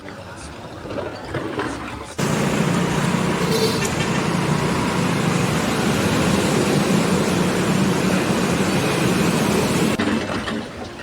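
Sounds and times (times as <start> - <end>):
loud machine hum: 2.2 - 10.0.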